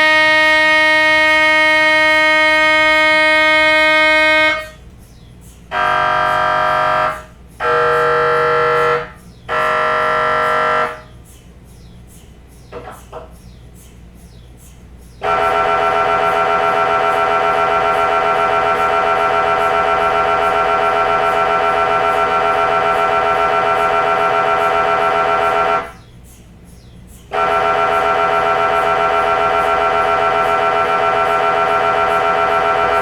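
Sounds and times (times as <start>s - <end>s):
mri scanner buzzing: 0.0s - 11.3s, 15.2s - 26.2s, 27.3s - 33.0s
low hum: 14.9s - 33.0s.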